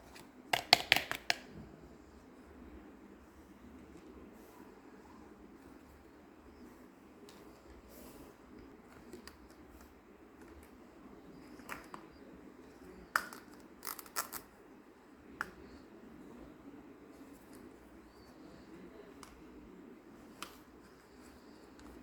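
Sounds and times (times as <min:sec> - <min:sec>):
small hard items clicking: 0:13.2 - 0:14.5.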